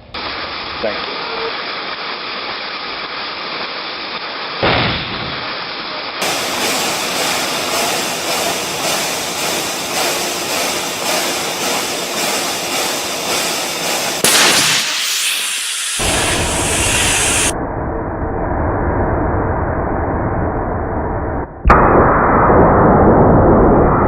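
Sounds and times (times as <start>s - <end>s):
high-pressure water hiss: 0.0s - 17.6s
sharp burst: 0.2s - 17.6s.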